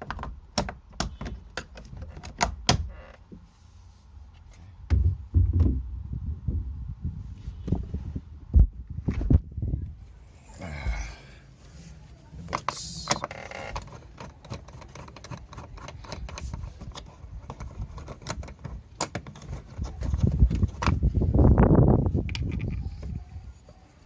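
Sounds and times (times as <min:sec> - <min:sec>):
plastic panel parts clicking: 0:12.5 - 0:19.6.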